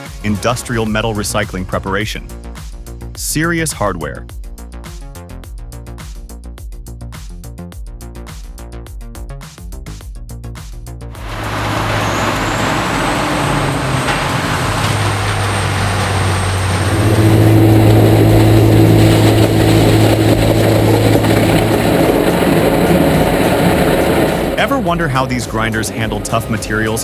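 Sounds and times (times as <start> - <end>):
low engine drone: 0.3 - 4.2, 11.1 - 27.0
shredding machine churning: 11.2 - 27.0.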